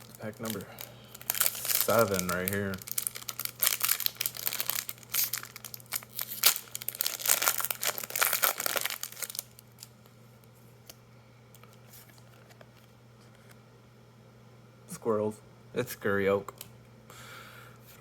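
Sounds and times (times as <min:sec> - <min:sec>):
foil wrapper tearing and crinkling: 0:00.0 - 0:09.9.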